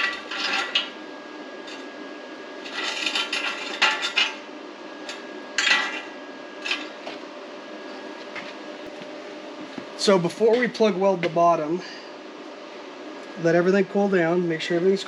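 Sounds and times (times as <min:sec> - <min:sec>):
metal parts clinking and scraping: 0:00.0 - 0:00.9.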